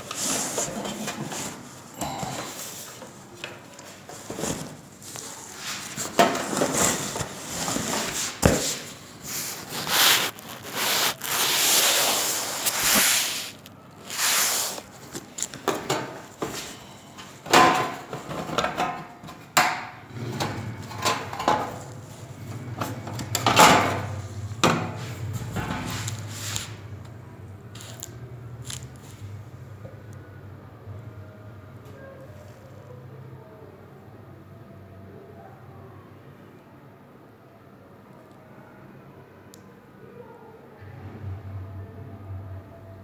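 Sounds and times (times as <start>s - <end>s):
packaging rubbing and rustling: 4.0s - 15.6s.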